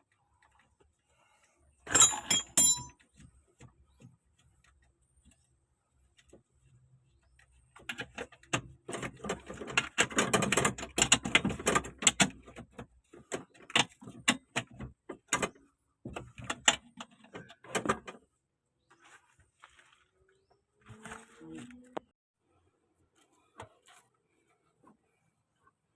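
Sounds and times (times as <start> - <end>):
metal clanks: 1.9 - 3.0
hand tools clicking and rattling on metal: 1.9 - 3.1.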